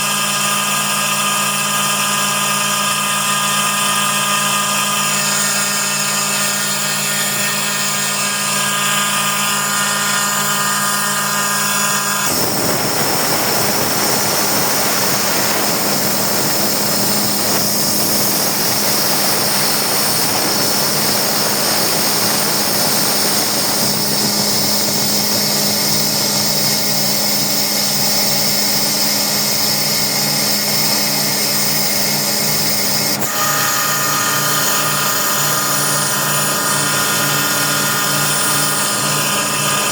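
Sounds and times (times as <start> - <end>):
air compressor motor hum: 0.0 - 39.9
loud rush of air: 12.2 - 26.1.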